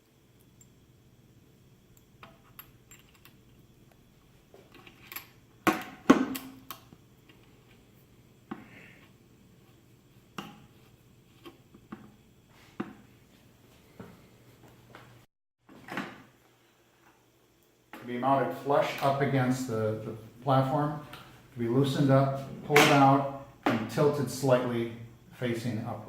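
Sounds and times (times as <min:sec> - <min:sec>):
faint steady low hum: 0:16.0 - 0:26.0.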